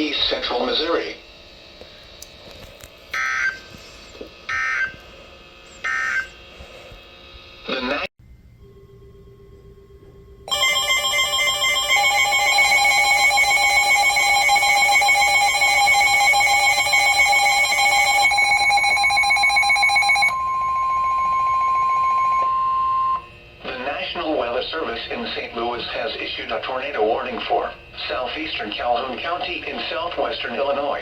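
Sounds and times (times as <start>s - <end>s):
electronic alarm tones: 10.5s - 23.4s.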